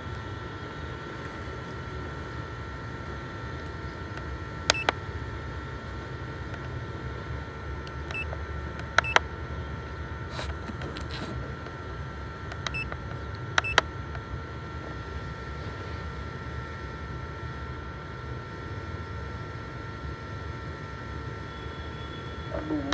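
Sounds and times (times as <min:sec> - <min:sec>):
faint electronic whine: 0:11.2 - 0:22.9.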